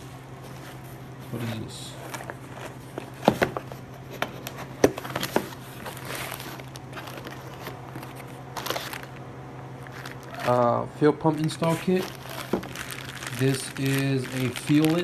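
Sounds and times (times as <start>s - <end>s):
steady low hum: 0.0s - 15.0s
plastic packaging crinkling: 0.4s - 15.0s.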